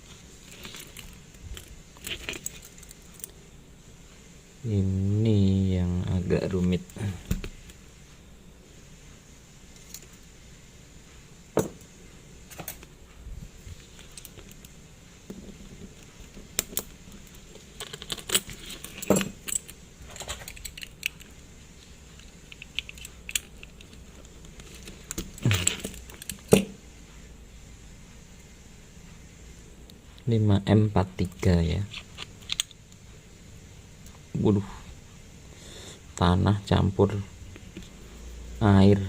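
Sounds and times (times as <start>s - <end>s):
watchmaker's tools clicking and scraping: 0.4s - 3.4s, 13.7s - 21.4s, 22.1s - 26.8s.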